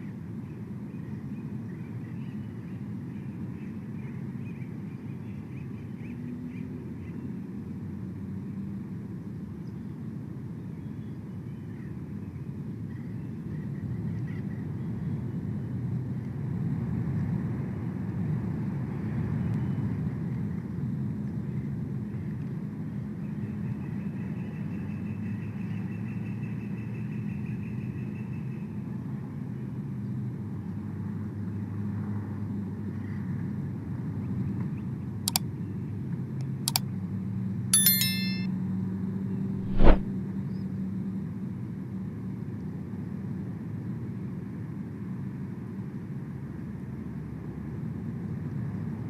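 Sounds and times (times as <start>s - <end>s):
short high chirp: 37.8s - 38.5s, 39.6s - 40.1s.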